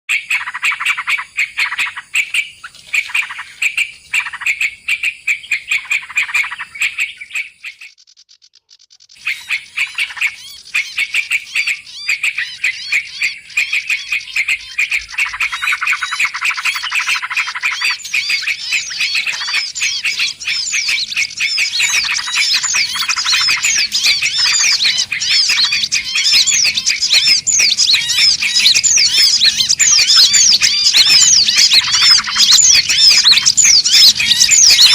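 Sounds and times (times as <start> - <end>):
songbirds chirping and twittering: 0.1 - 34.9.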